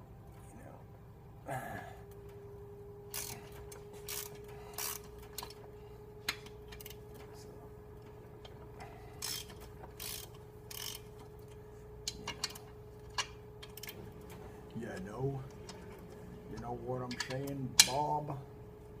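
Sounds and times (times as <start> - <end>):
ratchet wrench clicking: 3.1 - 5.6, 9.2 - 11.2, 12.0 - 14.0.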